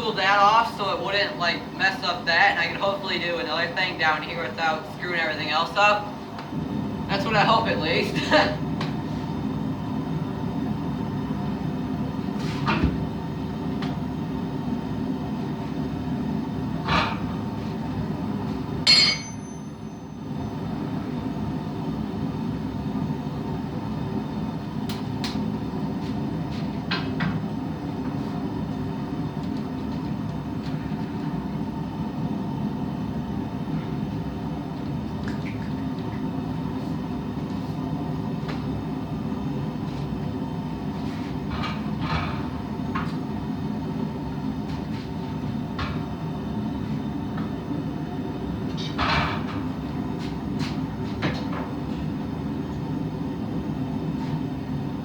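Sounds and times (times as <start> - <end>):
forge humming: 0.0 - 55.0
sharp metal clinks: 18.9 - 20.0.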